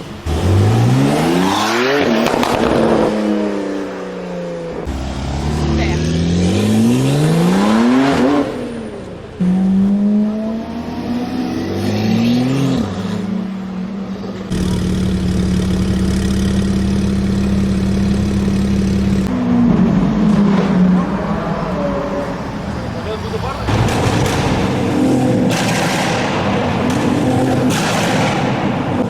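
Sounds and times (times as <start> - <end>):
car engine revving hard: 0.1 - 3.8, 4.8 - 13.6, 14.5 - 29.0.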